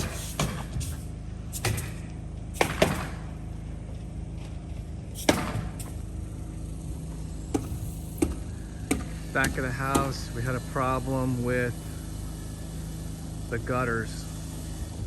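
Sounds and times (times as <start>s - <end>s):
steady low hum: 0.0s - 15.0s
sharp knocks: 2.6s - 3.3s, 5.2s - 6.0s, 7.5s - 10.2s.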